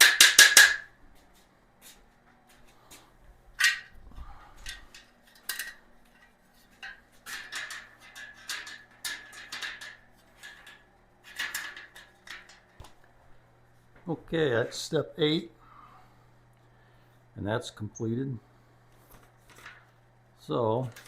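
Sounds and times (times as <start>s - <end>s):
steel shelving parts clinking: 3.6s - 4.0s, 4.6s - 12.8s.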